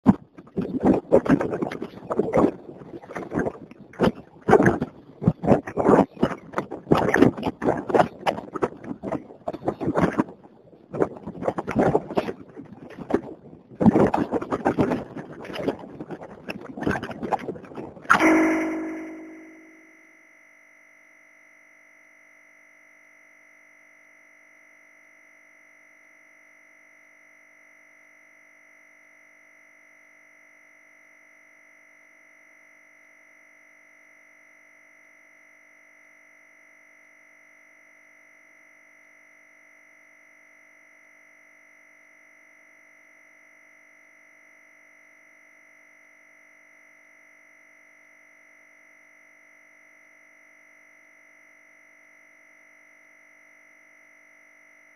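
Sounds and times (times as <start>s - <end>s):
faint high-pitched tone: 18.1s - 25.7s.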